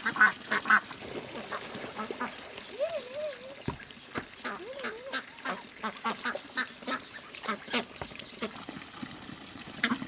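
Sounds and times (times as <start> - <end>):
ducks quacking: 4.4 - 8.6.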